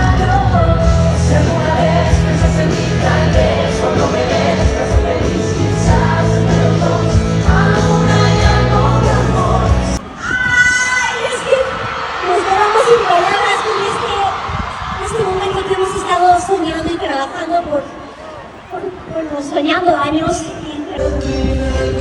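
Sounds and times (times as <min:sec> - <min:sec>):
heavy bass line: 0:00.0 - 0:10.0, 0:21.0 - 0:22.0
person singing: 0:00.0 - 0:10.0, 0:21.0 - 0:22.0.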